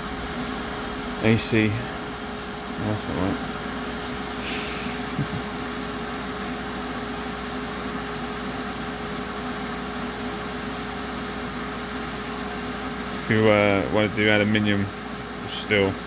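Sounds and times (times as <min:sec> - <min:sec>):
welder cooling fan whirring: 0:00.0 - 0:16.0.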